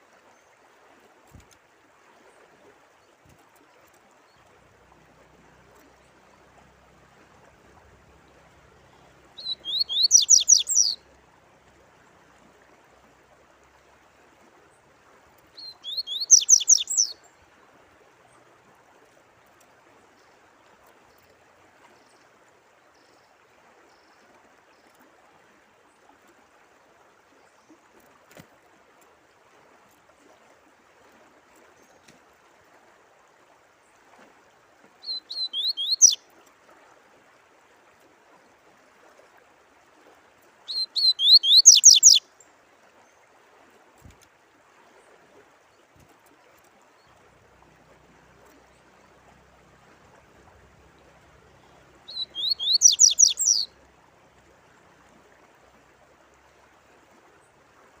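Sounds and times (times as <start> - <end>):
running water: 0.0 - 58.0
songbird whistling: 9.4 - 11.0, 15.6 - 17.2, 35.0 - 36.2, 40.7 - 42.2, 52.1 - 53.7.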